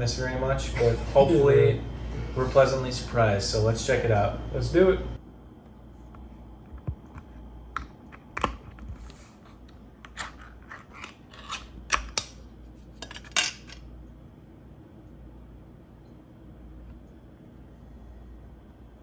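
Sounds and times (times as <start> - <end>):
metallic clicks and scrapes: 10.0 - 12.3.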